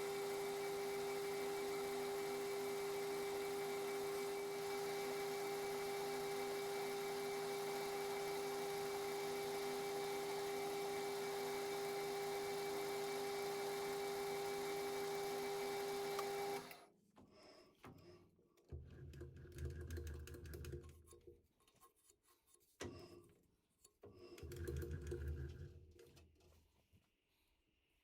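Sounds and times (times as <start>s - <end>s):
metal lathe whining: 0.0s - 16.8s.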